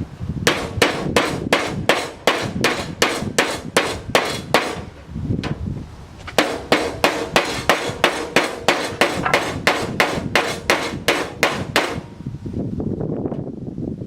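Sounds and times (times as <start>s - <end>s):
hammer striking sheet steel: 0.5s - 5.6s, 6.3s - 12.1s.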